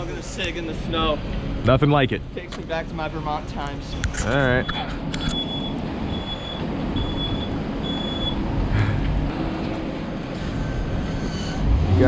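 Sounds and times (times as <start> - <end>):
van engine rumbling: 0.0 - 12.0
reversing beeper: 4.4 - 8.4.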